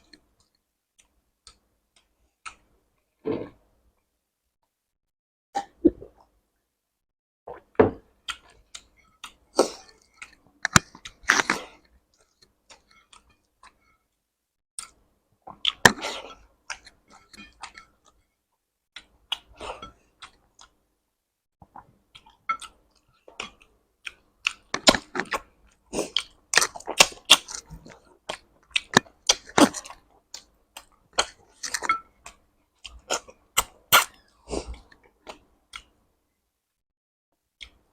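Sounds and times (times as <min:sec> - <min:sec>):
person chewing food: 0:00.0 - 0:03.6, 0:08.2 - 0:14.0, 0:14.8 - 0:18.2, 0:18.9 - 0:20.8, 0:21.6 - 0:36.0.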